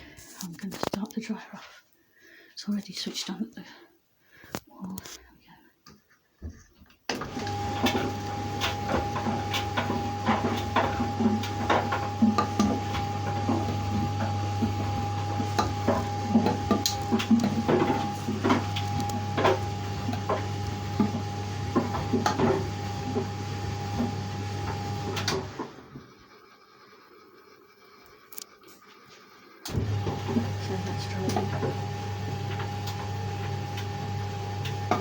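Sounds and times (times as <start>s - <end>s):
clothes knocking in dryer drum: 7.2s - 24.9s
tumble dryer humming and whining: 7.2s - 26.0s, 29.7s - 35.0s.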